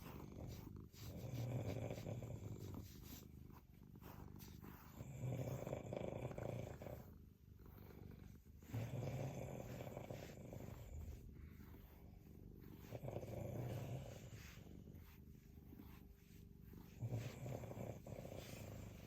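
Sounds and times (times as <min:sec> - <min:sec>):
quiet breaths: 0:00.0 - 0:19.0.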